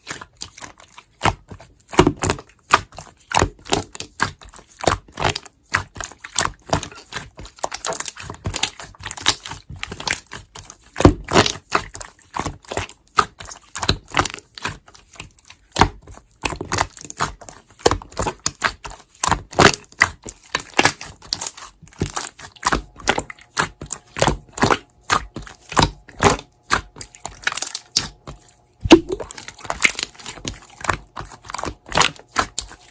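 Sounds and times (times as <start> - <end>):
slime clicking and popping: 28.8 - 32.8.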